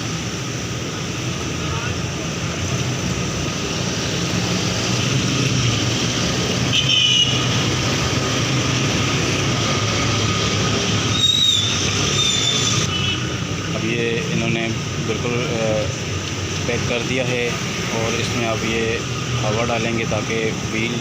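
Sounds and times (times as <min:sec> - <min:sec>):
brief high squeaks: 0:11.1 - 0:12.8.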